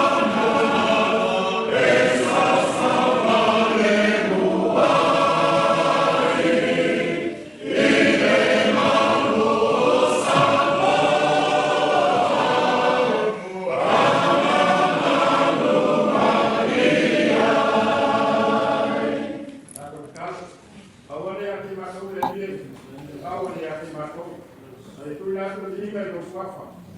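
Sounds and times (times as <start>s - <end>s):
choir singing: 0.0s - 19.5s.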